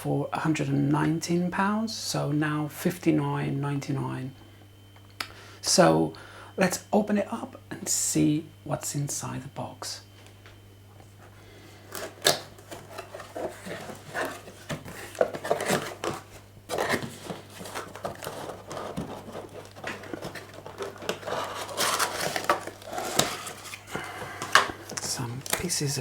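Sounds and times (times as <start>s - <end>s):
cardboard rustling and scraping: 11.0s - 26.0s
cardboard box being opened: 11.9s - 25.7s.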